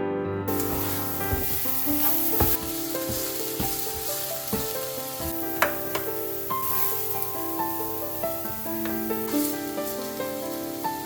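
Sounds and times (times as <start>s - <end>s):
background piano music: 0.0s - 11.0s
utensil knocking and scraping pan: 0.5s - 6.2s
food sizzling in frying pan: 0.5s - 11.0s.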